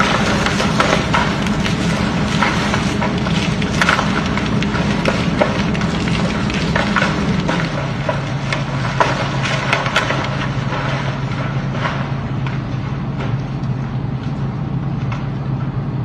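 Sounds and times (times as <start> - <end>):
rocks sliding and knocking: 0.0 - 12.7
steady low hum: 0.0 - 16.0.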